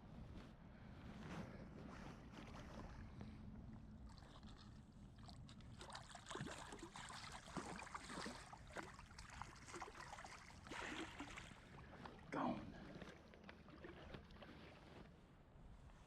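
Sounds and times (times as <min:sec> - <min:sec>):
wind rumble on microphone: 0:00.0 - 0:05.6
creek water splashing and trickling: 0:04.0 - 0:15.6.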